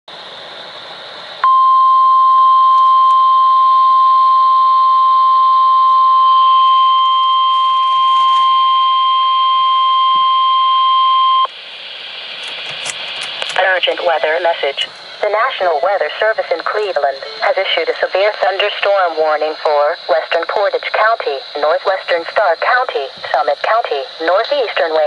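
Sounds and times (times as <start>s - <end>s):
loud steady alarm beep: 1.4s - 11.5s
faint radio hiss: 10.9s - 25.0s.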